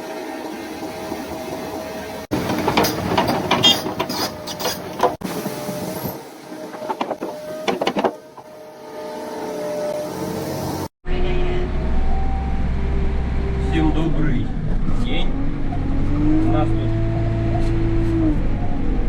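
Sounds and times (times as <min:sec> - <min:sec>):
backhoe engine and hydraulics whine: 0:00.0 - 0:10.9, 0:11.6 - 0:19.0
metallic clanks and knocks: 0:02.3 - 0:05.2, 0:06.7 - 0:08.5.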